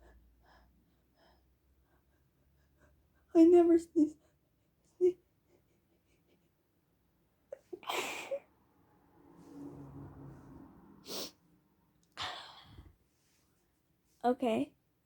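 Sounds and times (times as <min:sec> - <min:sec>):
person sneezing: 0:07.8 - 0:08.4.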